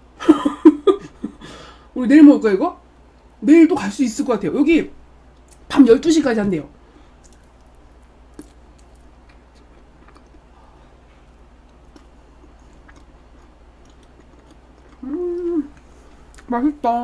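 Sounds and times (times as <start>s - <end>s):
person chewing soft food: 7.1s - 16.5s.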